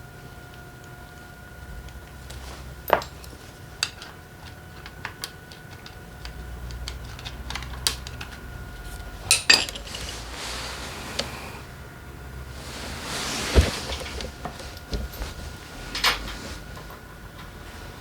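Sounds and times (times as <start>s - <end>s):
metal tools clinking on workbench: 9.3s - 10.3s.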